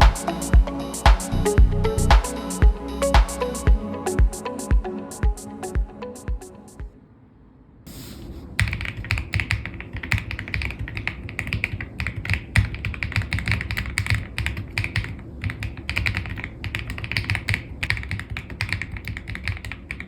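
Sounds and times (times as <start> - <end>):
mechanical keyboard typing: 8.6 - 20.0.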